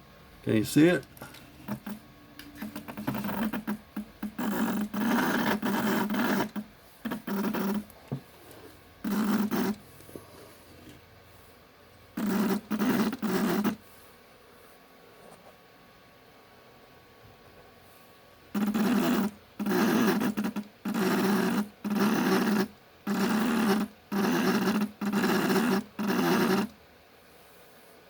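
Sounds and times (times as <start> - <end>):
stepper motor buzzing: 1.6 - 2.0, 2.6 - 7.9, 9.0 - 9.8, 12.2 - 13.8, 18.5 - 26.8.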